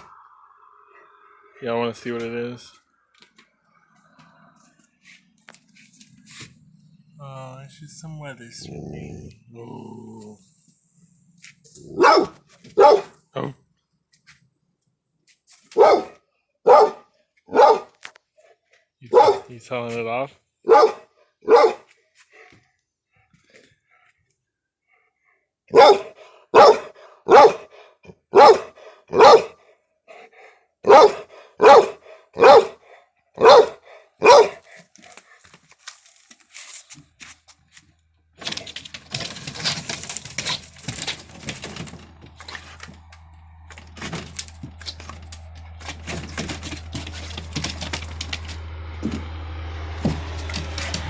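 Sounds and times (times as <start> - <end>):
dog barking: 11.8 - 13.5, 15.7 - 18.0, 19.1 - 19.5, 20.6 - 21.9, 25.7 - 29.6, 30.8 - 32.8, 33.4 - 34.6
rustling and knocking: 38.4 - 49.4
steady low hum: 40.3 - 51.0.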